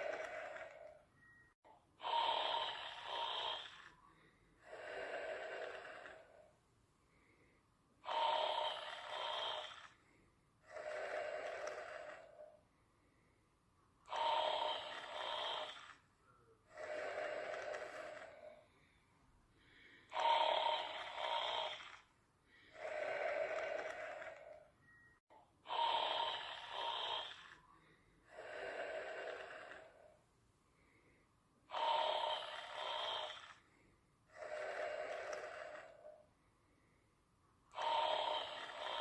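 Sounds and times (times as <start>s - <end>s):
person snoring: 0.0s - 0.9s, 2.0s - 6.5s, 8.0s - 12.5s, 14.1s - 16.0s, 16.6s - 19.0s, 19.6s - 24.7s, 25.6s - 30.2s, 31.7s - 36.2s, 37.7s - 39.0s.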